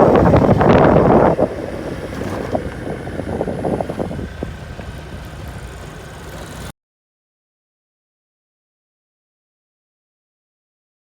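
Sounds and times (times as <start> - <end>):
motor scooter running: 0.0 - 6.7
wind buffeting microphone: 0.0 - 6.7.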